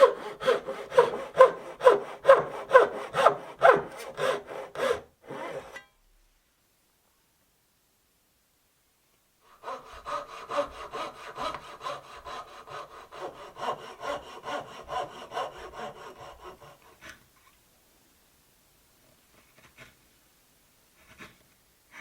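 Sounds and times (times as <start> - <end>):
hand saw cutting wood: 0.0 - 5.8, 9.5 - 17.2.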